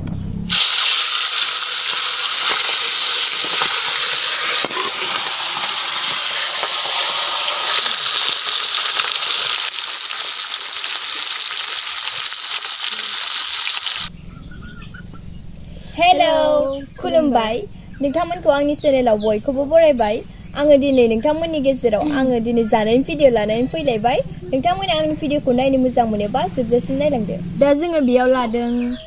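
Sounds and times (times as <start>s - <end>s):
food sizzling in hot oil: 0.5s - 14.1s.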